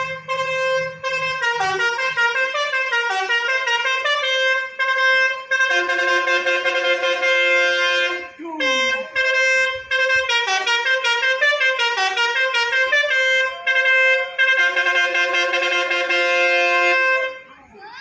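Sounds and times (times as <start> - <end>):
multi-tone air horn tune: 0.0 - 17.5.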